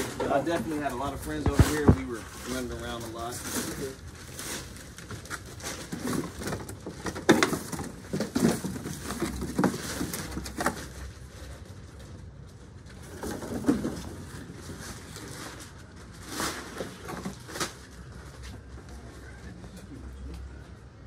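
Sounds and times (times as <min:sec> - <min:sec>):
bed parts knocking and bumping: 0:05.8 - 0:11.0.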